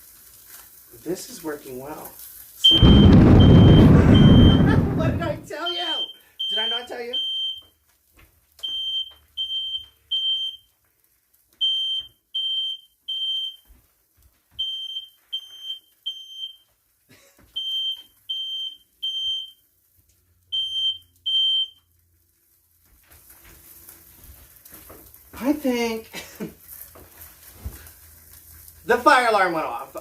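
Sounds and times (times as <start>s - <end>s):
smoke alarm high-pitched beeps: 2.6s - 7.8s, 8.6s - 10.7s, 11.6s - 13.7s, 14.6s - 16.7s, 17.5s - 19.6s, 20.5s - 21.9s.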